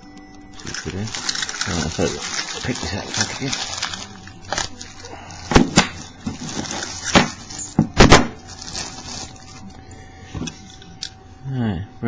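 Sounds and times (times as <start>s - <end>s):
plastic packaging crinkling: 0.4s - 11.2s
plastic snapping and clacking: 2.3s - 8.4s.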